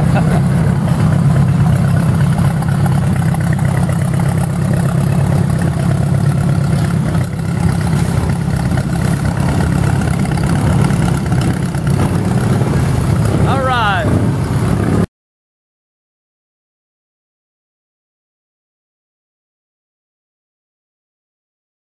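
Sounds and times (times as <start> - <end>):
motorcycle engine idling: 0.0 - 13.6.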